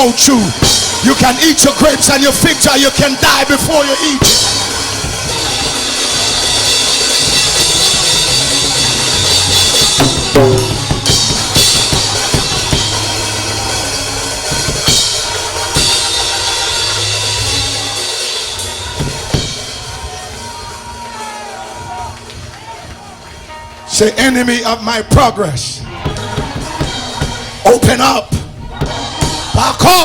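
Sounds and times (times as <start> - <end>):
bass line: 0.0 - 20.8
drum kit playing loudly: 0.0 - 23.6, 25.9 - 30.0.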